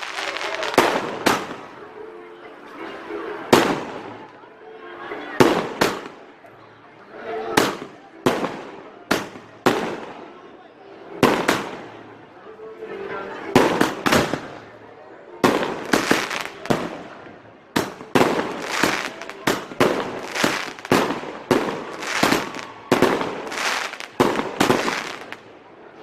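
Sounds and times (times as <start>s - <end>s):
fireworks banging: 0.0s - 1.7s, 3.5s - 4.2s, 5.4s - 6.3s, 7.6s - 10.3s, 11.2s - 12.0s, 13.6s - 14.6s, 15.4s - 25.5s.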